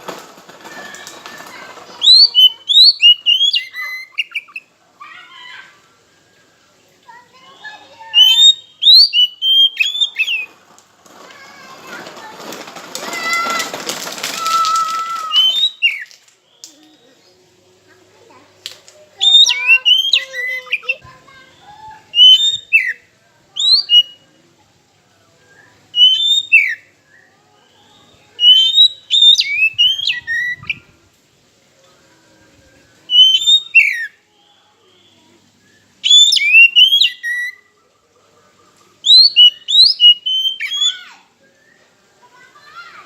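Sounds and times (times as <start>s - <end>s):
bird singing whistled notes: 2.0s - 4.7s, 7.4s - 10.5s, 15.3s - 17.4s, 19.2s - 23.0s, 23.6s - 24.2s, 25.3s - 30.9s, 32.8s - 37.8s, 39.0s - 42.2s.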